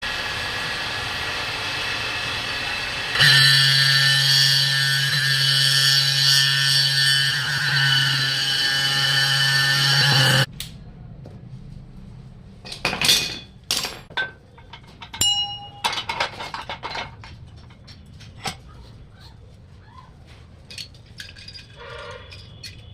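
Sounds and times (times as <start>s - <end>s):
metal clinks and knocks: 12.6s - 18.8s, 20.6s - 22.9s.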